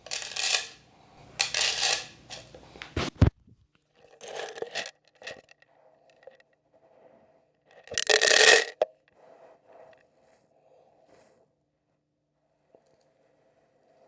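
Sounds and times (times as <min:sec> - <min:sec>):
corn kernels scattering: 0:00.0 - 0:02.5, 0:07.9 - 0:08.8.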